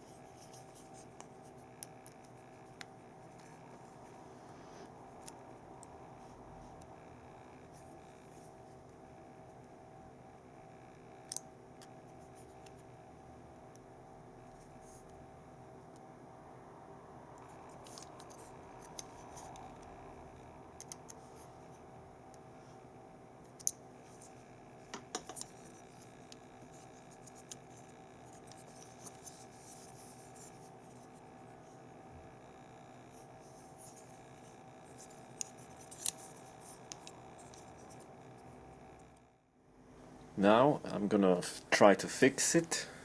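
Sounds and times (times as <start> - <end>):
faint steady hum: 0.0 - 43.0
small plastic parts clicking: 35.0 - 38.0.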